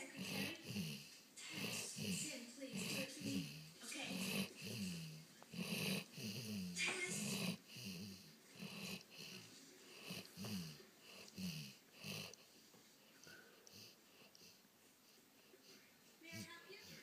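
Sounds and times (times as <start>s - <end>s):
dog snoring wheezily: 0.0s - 12.5s.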